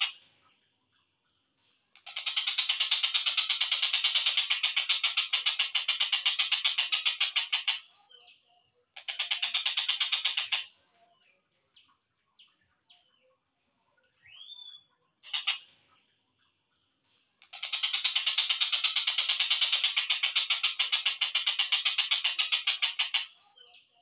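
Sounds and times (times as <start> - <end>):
kingfisher rattling call: 2.0 - 7.9, 9.0 - 10.7, 15.2 - 15.7, 17.4 - 23.4.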